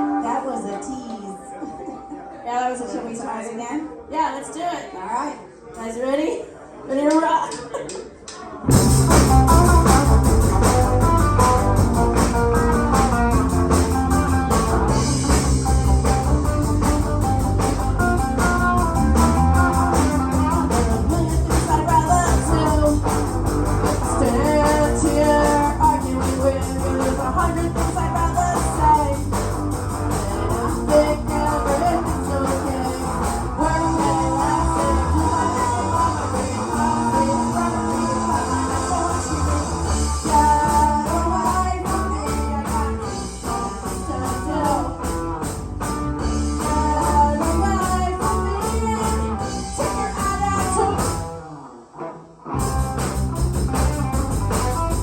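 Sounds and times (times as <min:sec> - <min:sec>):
bass: 0:08.3 - 0:51.6, 0:52.5 - 0:55.0
drums: 0:08.6 - 0:55.0
electric guitar: 0:08.7 - 0:55.0.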